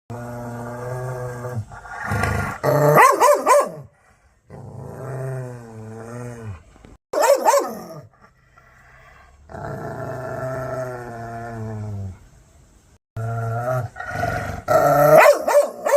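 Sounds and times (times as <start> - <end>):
dog barking: 2.9 - 3.9, 7.1 - 8.1, 15.1 - 15.9
dog growling: 4.5 - 6.7, 7.8 - 12.2, 13.2 - 15.9.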